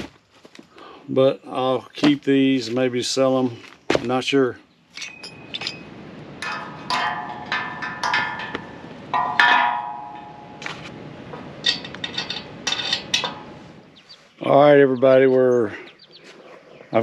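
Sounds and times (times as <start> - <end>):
metal parts knocking and clinking: 4.9 - 10.8, 11.4 - 13.6.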